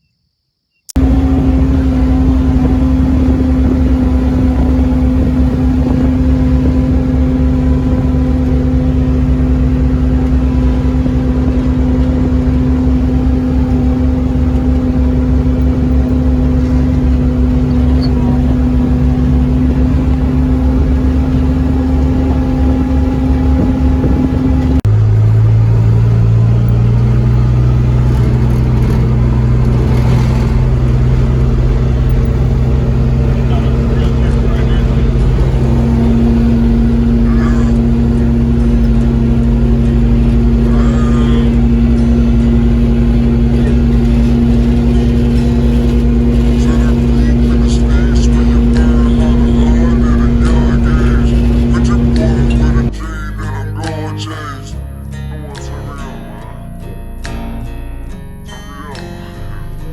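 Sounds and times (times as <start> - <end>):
vehicle engine running: 0.9 - 59.9
low rumble: 1.0 - 59.9.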